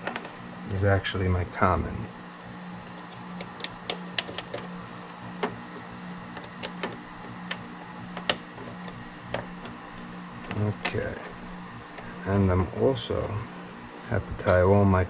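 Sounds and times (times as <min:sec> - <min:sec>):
steady low hum: 0:00.0 - 0:15.0
small clicks and taps: 0:06.3 - 0:11.3.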